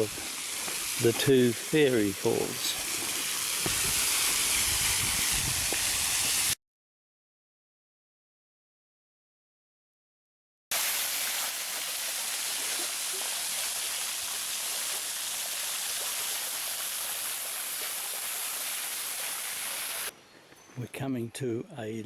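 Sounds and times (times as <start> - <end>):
waterfall splashing: 0.0 - 6.6, 10.7 - 20.1.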